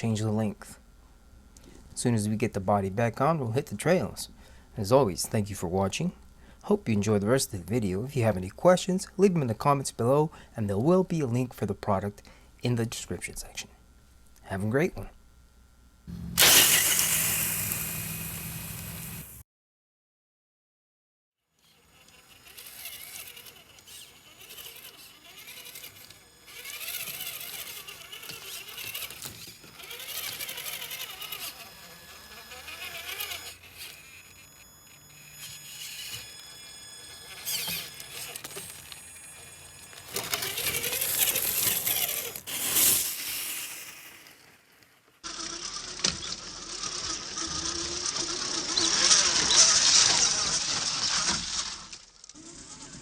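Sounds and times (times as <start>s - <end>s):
toy truck motor whining: 16.1s - 19.4s, 21.5s - 44.6s, 45.2s - 53.0s.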